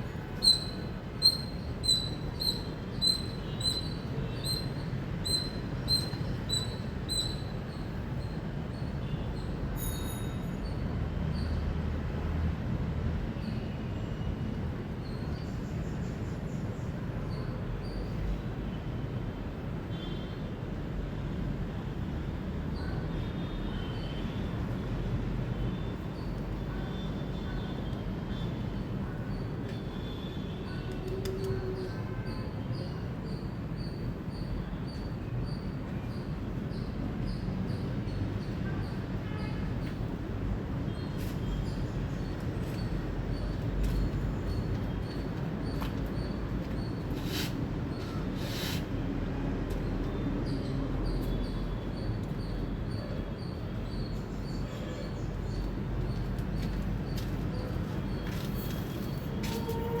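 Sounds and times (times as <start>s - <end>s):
squirrel chirping: 0.4s - 7.4s.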